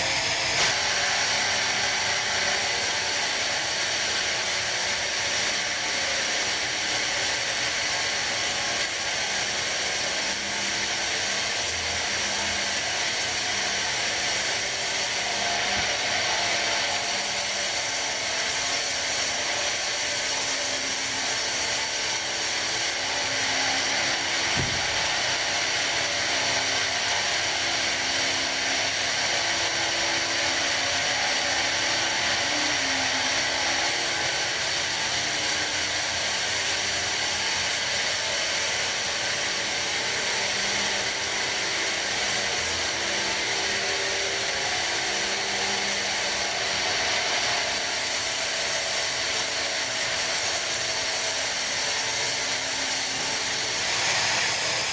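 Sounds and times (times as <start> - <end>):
machine running hum: 0.0 - 4.2, 53.0 - 54.9
band saw blade hissing in wood: 0.0 - 16.2, 16.8 - 25.0, 47.4 - 54.9
brief knock: 24.6 - 24.8.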